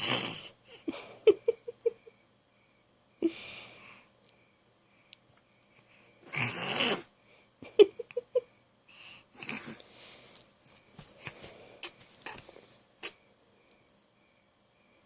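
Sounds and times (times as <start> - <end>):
imitation snoring: 0.0 - 0.6, 6.2 - 7.1.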